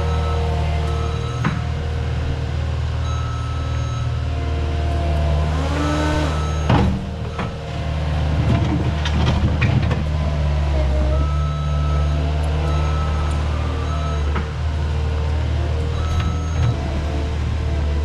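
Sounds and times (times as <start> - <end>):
diesel engine and hydraulics: 0.0 - 18.0
hydraulic whine: 3.0 - 10.0, 10.7 - 18.0.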